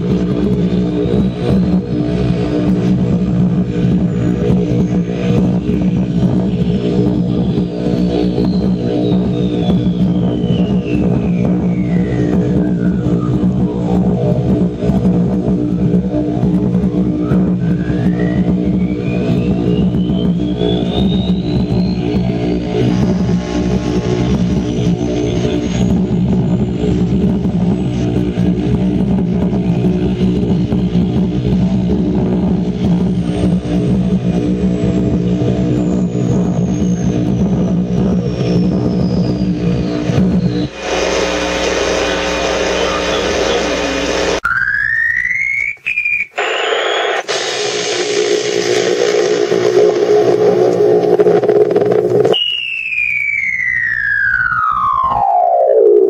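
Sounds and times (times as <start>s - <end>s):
shortwave radio humming drone: 0.0s - 44.6s, 46.3s - 52.4s
thin gliding whistle: 7.5s - 13.9s, 17.1s - 26.0s, 44.4s - 47.2s, 52.2s - 56.0s
radio band hiss: 40.0s - 44.4s, 45.8s - 52.4s
faint high whistle sliding down: 44.4s - 48.2s, 52.3s - 56.0s.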